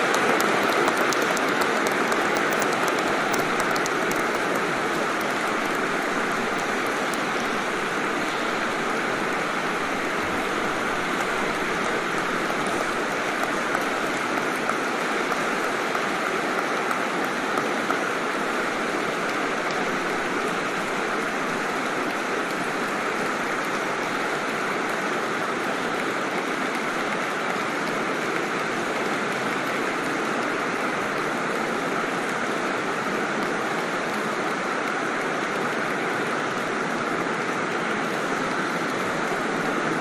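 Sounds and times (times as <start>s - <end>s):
crowd applause: 0.0s - 40.0s.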